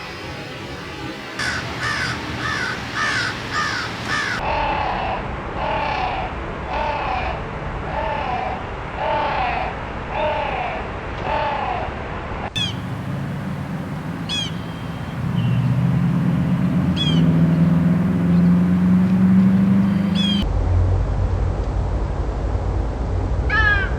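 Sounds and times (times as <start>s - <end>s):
bird calling: 1.4s - 4.4s, 12.6s - 20.4s.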